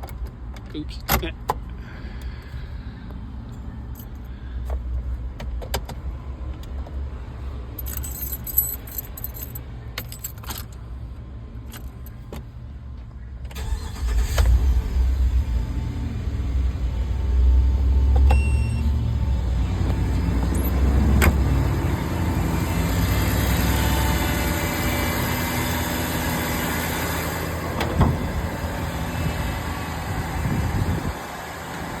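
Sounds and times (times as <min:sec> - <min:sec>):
car engine running: 0:15.4 - 0:32.0.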